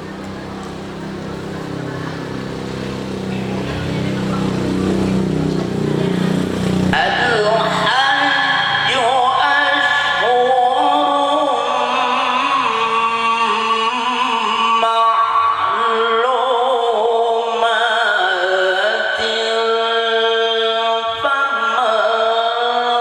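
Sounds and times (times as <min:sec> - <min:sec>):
man reciting melodically: 0:06.7 - 0:23.0.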